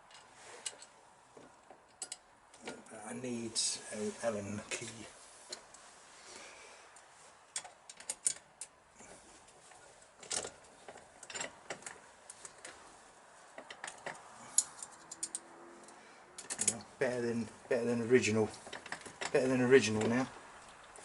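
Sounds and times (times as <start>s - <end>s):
metal clicks of tools and screws: 1.8s - 2.8s, 7.5s - 8.8s, 10.2s - 12.8s, 13.6s - 16.9s.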